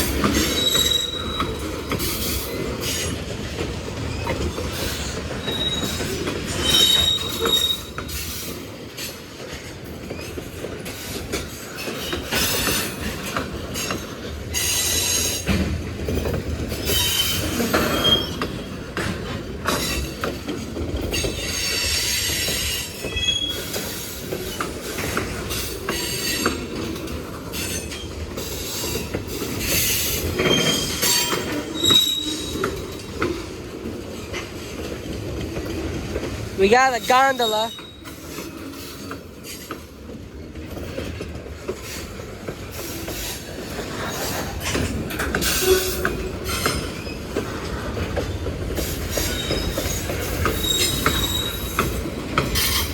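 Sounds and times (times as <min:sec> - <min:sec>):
train rumble: 0:00.0 - 0:52.9
wheels clicking over rail joints: 0:00.0 - 0:52.9
high-pitched wheel squeals: 0:00.4 - 0:01.6, 0:06.6 - 0:08.0, 0:30.4 - 0:32.7, 0:49.3 - 0:51.8.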